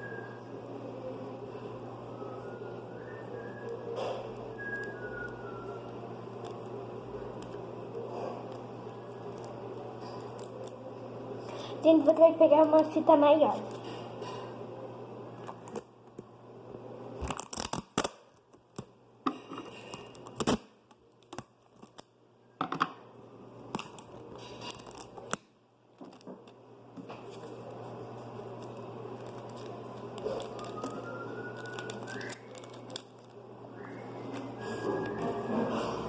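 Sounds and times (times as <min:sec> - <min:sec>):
adhesive tape pulled and torn: 0:17.2 - 0:18.2
paper crinkling: 0:23.7 - 0:25.4, 0:27.0 - 0:33.4.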